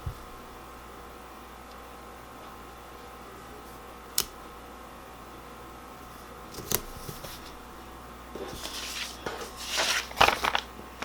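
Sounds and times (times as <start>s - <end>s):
paper crinkling scrapes: 6.6s - 7.6s, 8.4s - 10.7s
paper rustling: 6.6s - 7.6s, 8.4s - 11.0s.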